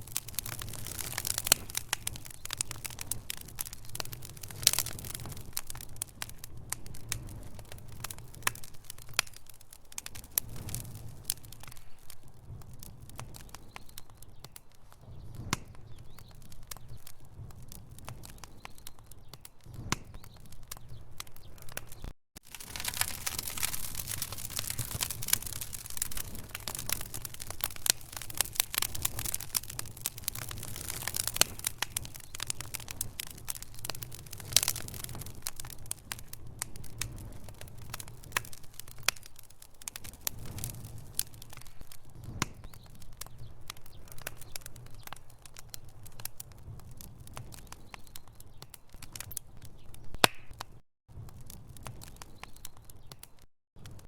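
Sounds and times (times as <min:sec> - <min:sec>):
low rumble of flame: 0:00.0 - 0:53.2, 0:53.8 - 0:54.0
logs crackling and popping: 0:00.0 - 0:54.0.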